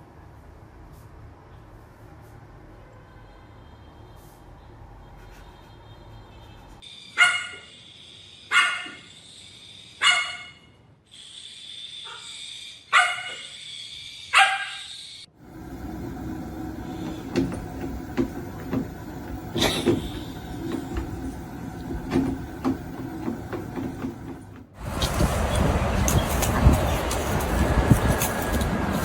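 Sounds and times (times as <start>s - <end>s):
dog barking: 7.2s - 7.7s, 8.5s - 9.1s, 10.0s - 10.6s, 12.9s - 13.5s, 14.3s - 14.9s.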